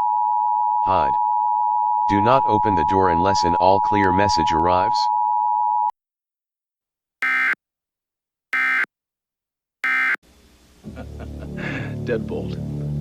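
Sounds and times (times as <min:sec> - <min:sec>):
harsh digital data bursts: 0:07.2 - 0:07.6, 0:08.6 - 0:08.9, 0:09.8 - 0:10.2
two-tone attention signal: 0:07.2 - 0:07.6, 0:08.6 - 0:08.9, 0:09.8 - 0:10.2.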